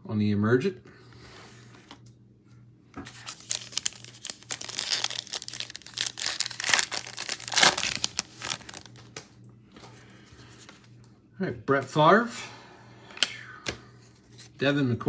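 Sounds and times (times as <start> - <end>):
plastic wrapper tearing and crinkling: 3.1 - 9.2.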